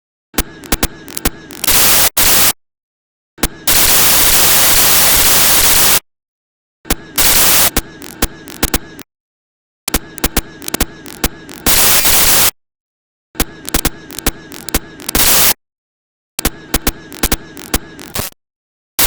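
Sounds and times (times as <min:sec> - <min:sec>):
rapid crackling clicks: 0:00.4 - 0:02.5, 0:06.9 - 0:09.1, 0:09.9 - 0:12.6, 0:13.4 - 0:15.6, 0:16.4 - 0:18.4
static hiss blasts: 0:03.7 - 0:06.0, 0:07.2 - 0:08.6, 0:10.6 - 0:12.5.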